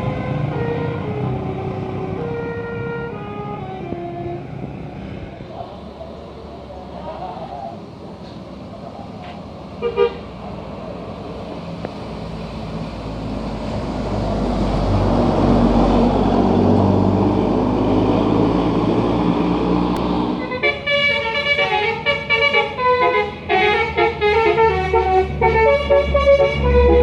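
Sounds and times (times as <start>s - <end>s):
horn toot: 0.0s - 4.5s, 20.2s - 27.0s
bus musical air horn melody: 0.0s - 4.7s, 9.8s - 10.3s, 20.0s - 27.0s
bus passing: 0.0s - 27.0s.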